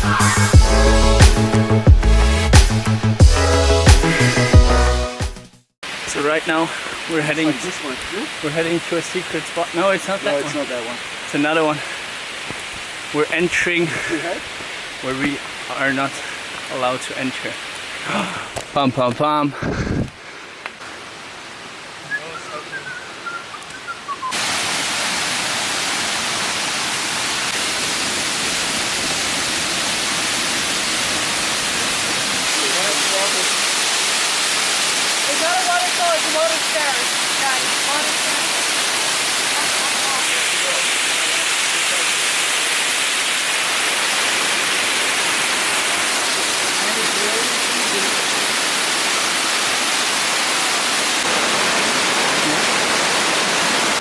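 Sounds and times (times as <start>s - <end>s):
waterfall rushing: 5.8s - 18.9s, 24.2s - 54.0s.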